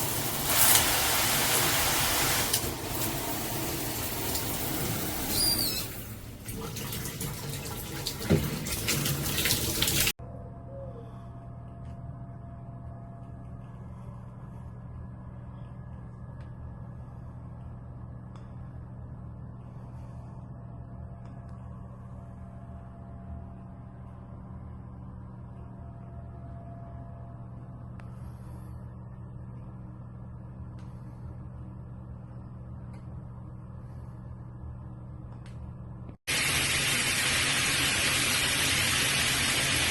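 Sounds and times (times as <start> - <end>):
water spraying from shower head: 0.0 - 10.2, 36.3 - 39.9
low hum: 10.2 - 39.1.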